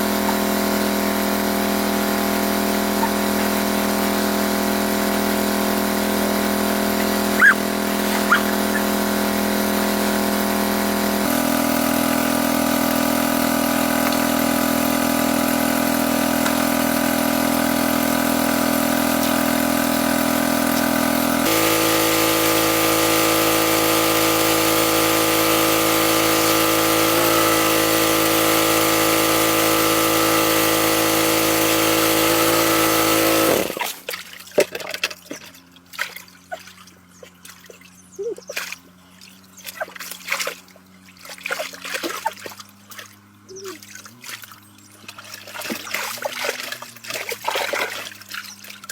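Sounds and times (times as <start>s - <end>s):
small water pump engine running: 0.0s - 48.9s
water splashing and trickling: 33.7s - 48.9s.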